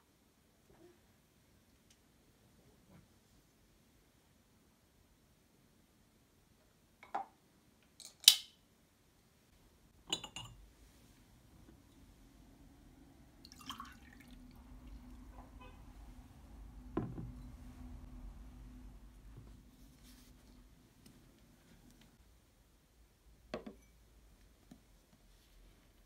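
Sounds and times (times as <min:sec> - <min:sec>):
low steady hum: 0:09.1 - 0:26.0
glass and dishes clinking: 0:10.1 - 0:10.6.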